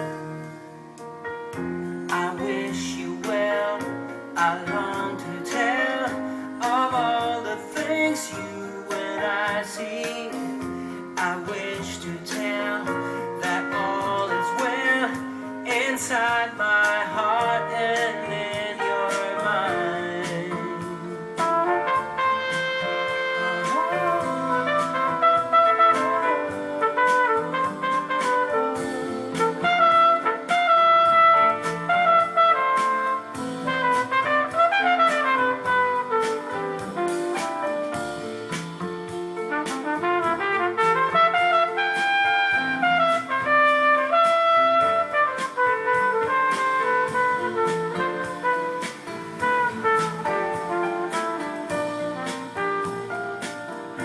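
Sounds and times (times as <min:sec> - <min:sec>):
song through amplifier: 0:00.0 - 0:54.0.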